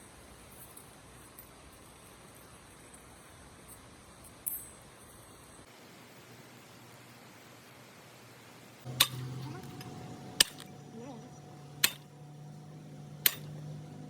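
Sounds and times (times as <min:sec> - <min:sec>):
steady low hum: 0:08.7 - 0:14.0
metal-on-metal strikes: 0:08.9 - 0:10.7, 0:11.8 - 0:12.2, 0:13.1 - 0:13.7.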